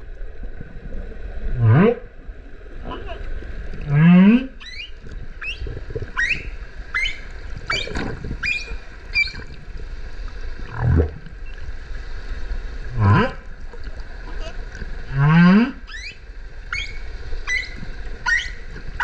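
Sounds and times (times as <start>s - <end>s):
humpback whale low call: 14.3s - 19.0s.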